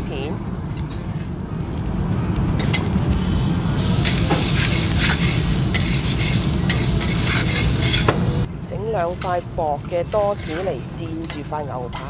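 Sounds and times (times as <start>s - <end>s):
food sizzling on griddle: 2.7s - 8.5s
metal spatulas scraping hot plate: 3.8s - 8.5s, 9.1s - 12.0s.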